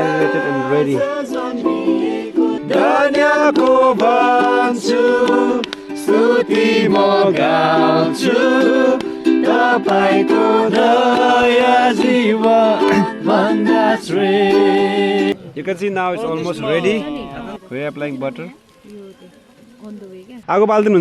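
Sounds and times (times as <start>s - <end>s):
person singing: 0.0s - 15.4s
plucked string accompaniment: 0.0s - 15.4s.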